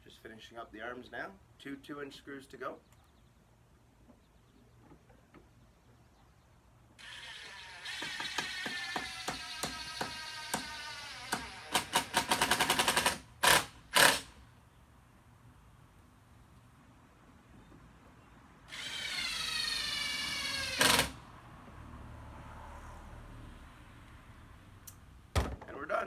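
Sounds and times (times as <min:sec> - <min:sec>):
impact driver motor whine: 0:18.7 - 0:21.2.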